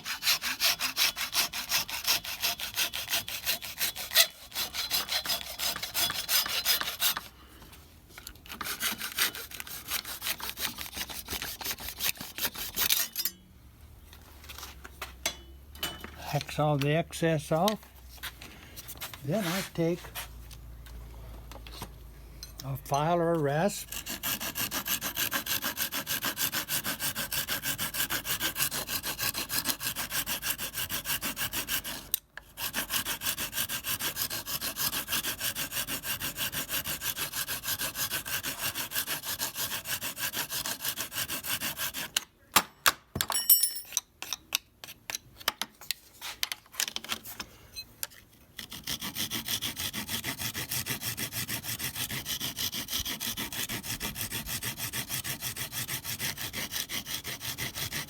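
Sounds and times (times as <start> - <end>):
hand file rasping wood: 0.0 - 7.3, 8.5 - 13.2, 19.3 - 20.3, 23.0 - 42.2, 48.6 - 58.0.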